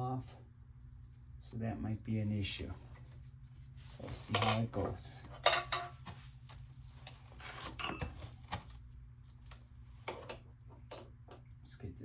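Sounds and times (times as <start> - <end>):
metallic clatter and ring: 7.7 - 8.6.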